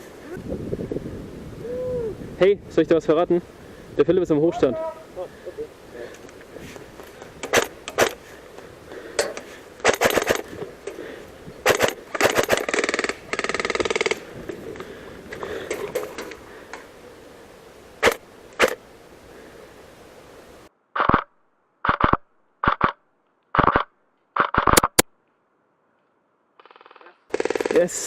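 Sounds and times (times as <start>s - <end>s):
airsoft guns firing: 7.4s - 8.2s, 9.8s - 10.5s, 11.6s - 14.2s, 18.0s - 18.8s, 26.6s - 28.0s.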